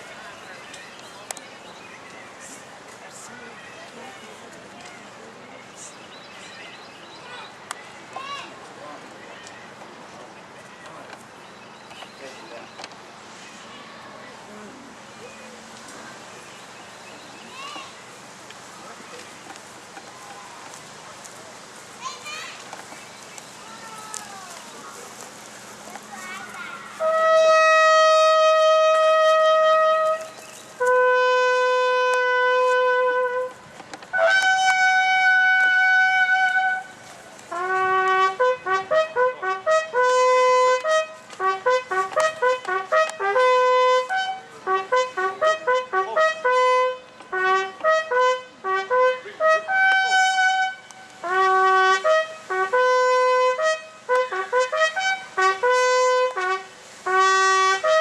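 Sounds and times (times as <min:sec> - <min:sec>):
brass horn call: 0:25.8 - 0:58.0.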